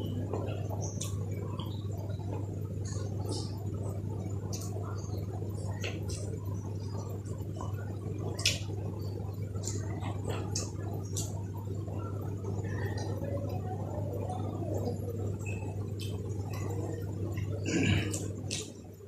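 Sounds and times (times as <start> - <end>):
steady low hum: 0.0 - 19.0
wet chewing and lip-smacking: 9.6 - 11.5.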